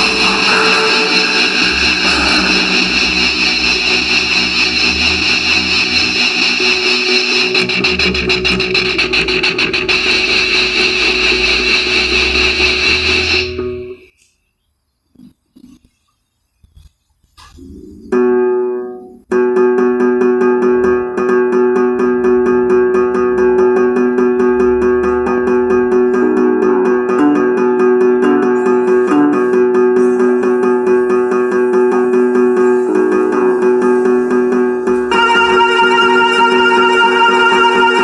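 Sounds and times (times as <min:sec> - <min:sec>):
instrumental music with sustained chords: 0:00.0 - 0:14.1, 0:18.8 - 0:38.0.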